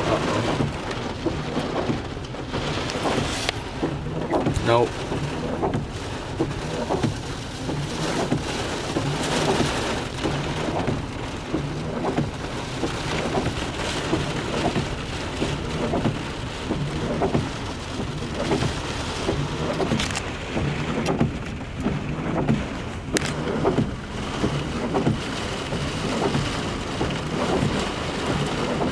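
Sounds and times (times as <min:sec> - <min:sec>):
heavy rain falling: 0:00.0 - 0:28.9.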